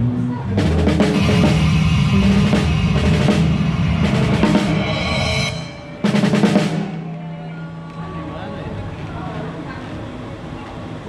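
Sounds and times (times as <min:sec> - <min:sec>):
rapid snare and bass drum hits: 0:00.6 - 0:07.1
band music: 0:00.6 - 0:07.5.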